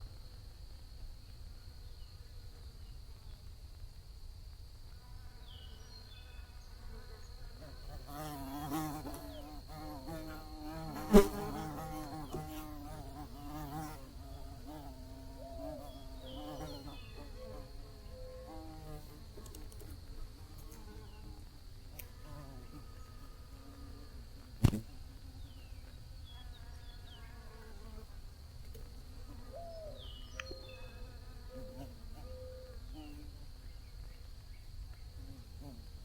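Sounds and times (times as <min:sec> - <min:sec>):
bees buzzing: 0:08.0 - 0:17.6
sharp click: 0:24.6 - 0:24.8.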